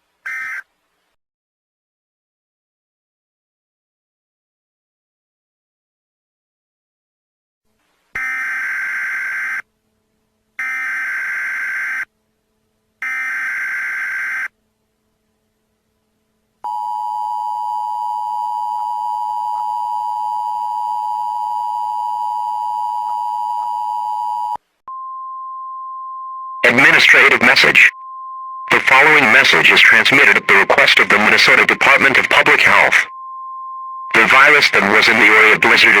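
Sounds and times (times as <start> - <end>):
single steady tone: 16.6 - 30.9, 33.0 - 34.2
digital header data bursts: 26.6 - 28.0, 28.7 - 33.1.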